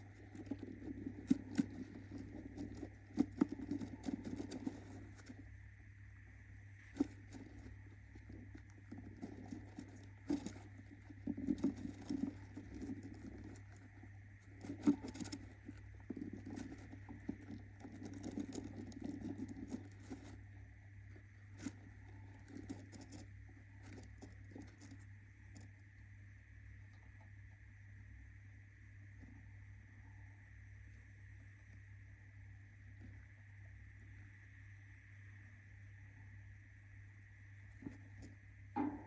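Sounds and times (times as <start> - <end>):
bird scratching and rustling: 0.0 - 25.9, 37.6 - 38.4
steady low hum: 0.0 - 39.0.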